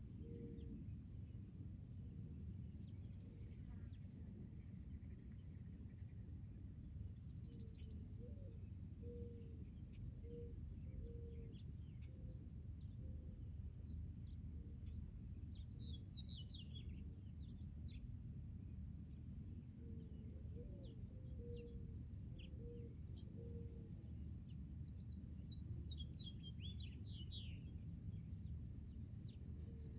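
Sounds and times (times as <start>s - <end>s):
insect trill: 0.0s - 29.9s
bird chirps: 24.5s - 28.2s.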